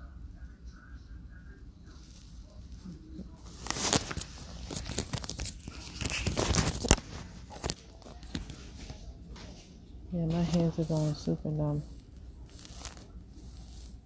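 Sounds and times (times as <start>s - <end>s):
rustling and crinkling: 1.8s - 14.0s.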